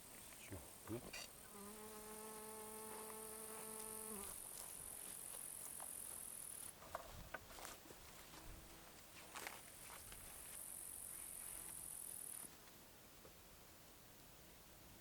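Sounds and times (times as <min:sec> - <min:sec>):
crickets chirring: 0:00.8 - 0:06.7, 0:10.3 - 0:12.5.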